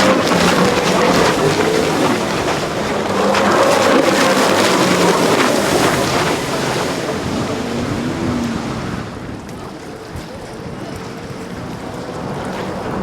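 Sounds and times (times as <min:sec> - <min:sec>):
water spray rushing: 0:00.0 - 0:09.4
watercraft engine running: 0:00.0 - 0:13.0
wind buffeting microphone: 0:00.0 - 0:13.0.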